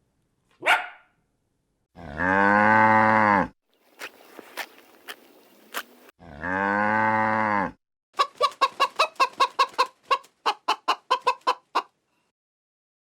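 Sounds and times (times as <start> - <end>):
chicken clucking: 8.2 - 12.0.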